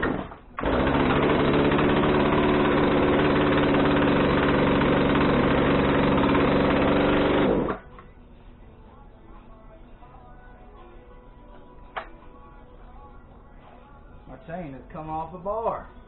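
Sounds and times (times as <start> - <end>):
chainsaw engine idling: 0.0 - 7.8
chainsaw starting sound: 0.0 - 7.8.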